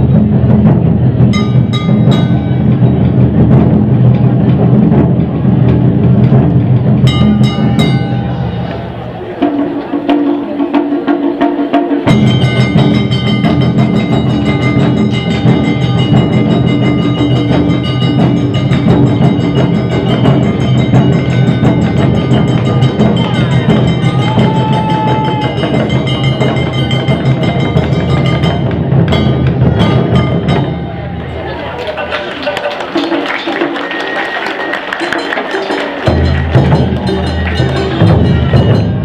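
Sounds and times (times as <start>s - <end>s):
drums: 0.0s - 39.0s
hand gong striking: 1.3s - 3.3s, 7.0s - 8.8s
held melodic notes: 7.0s - 39.0s.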